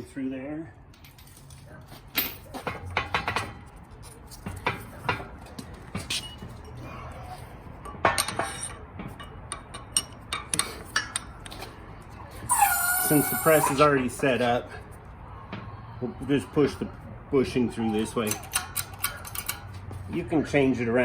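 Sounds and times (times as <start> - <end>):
metal parts clinking: 0.9 - 4.4, 7.9 - 11.7, 18.2 - 19.8.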